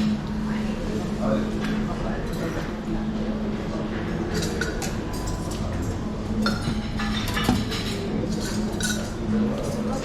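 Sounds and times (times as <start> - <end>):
dishes and cutlery clinking: 4.2 - 10.0.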